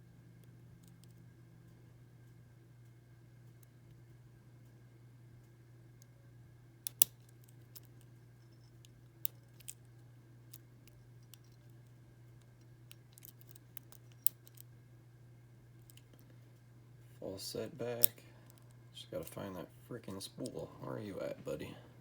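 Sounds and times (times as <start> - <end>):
lock pick clicking in padlock: 6.8 - 7.9, 12.9 - 14.6.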